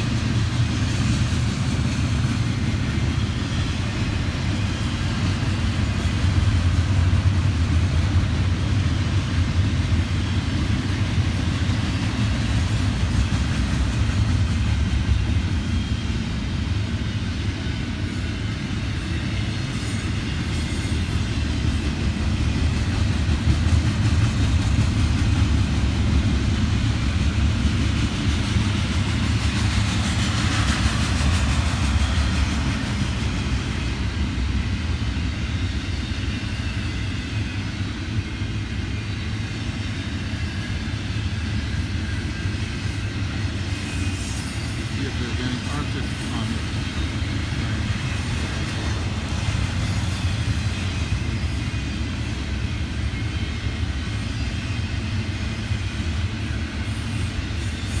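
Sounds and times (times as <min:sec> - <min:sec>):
freight train wheels rumbling: 0:00.0 - 0:58.0
hiss: 0:27.8 - 0:33.8.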